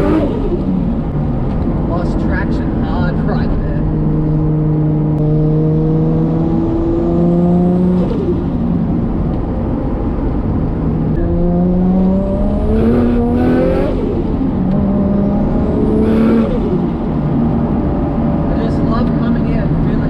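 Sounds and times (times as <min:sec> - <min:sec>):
car engine accelerating hard: 0:00.0 - 0:20.0.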